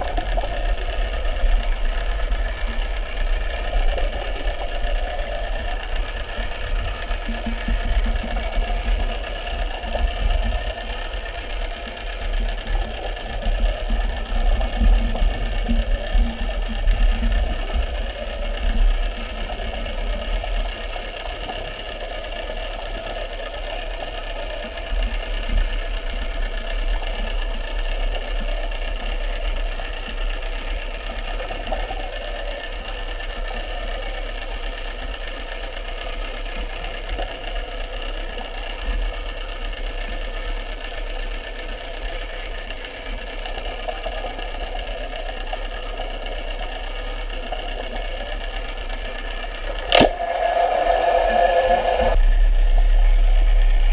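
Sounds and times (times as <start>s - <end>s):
low rumble: 0.0s - 53.9s
small motor whirring: 0.0s - 53.9s.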